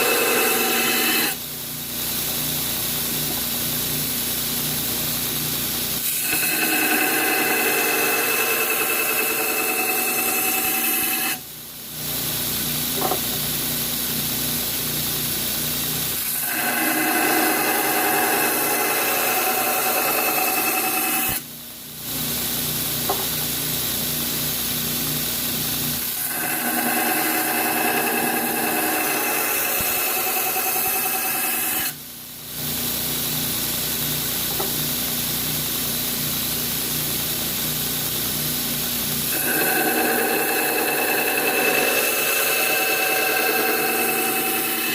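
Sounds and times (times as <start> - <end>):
power grinder grinding steel: 0.0 - 1.4, 6.0 - 11.4, 16.2 - 21.4, 26.1 - 32.0, 39.3 - 44.9.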